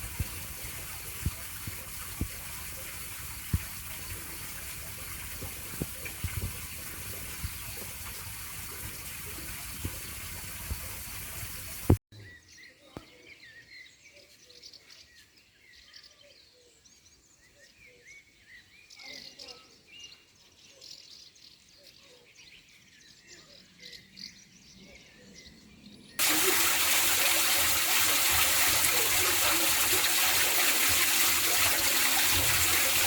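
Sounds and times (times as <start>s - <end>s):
running water: 0.0s - 12.0s, 26.2s - 33.0s.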